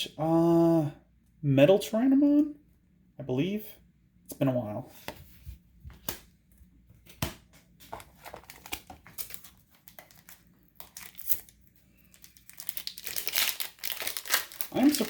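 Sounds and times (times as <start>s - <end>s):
plastic wrapper crinkling: 7.8s - 15.0s.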